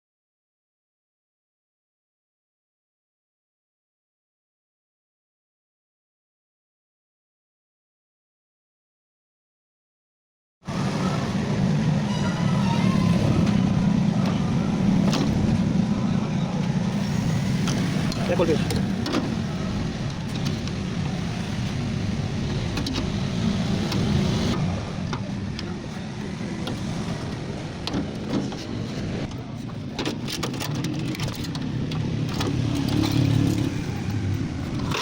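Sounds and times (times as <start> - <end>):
clinks of metal parts and tools: 30.0 - 34.2.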